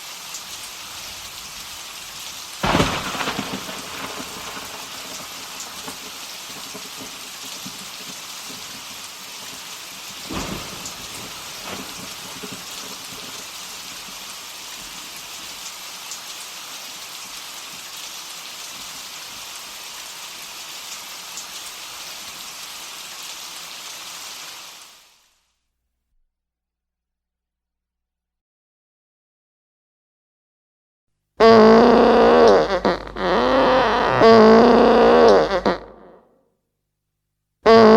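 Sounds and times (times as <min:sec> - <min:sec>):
heavy rain: 0:00.0 - 0:25.3, 0:31.4 - 0:36.0
thunder: 0:02.6 - 0:08.8, 0:10.1 - 0:13.6.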